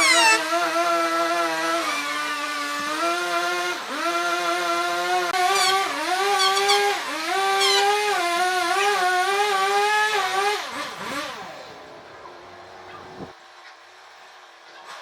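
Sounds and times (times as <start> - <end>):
power tool motor cutting wood: 0.0 - 13.3.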